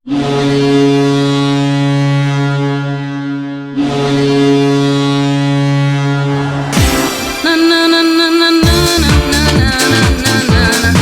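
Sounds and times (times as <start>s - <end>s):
ice hockey goal horn: 0.0s - 9.1s.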